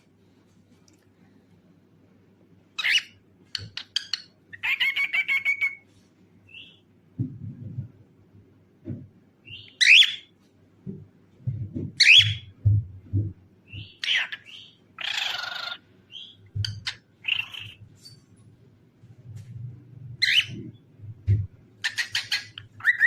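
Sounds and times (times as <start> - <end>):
cockatiel chirping and screeching: 2.8 - 5.8, 9.5 - 10.3, 12.0 - 12.4, 13.8 - 17.8, 20.2 - 20.6, 21.8 - 23.0.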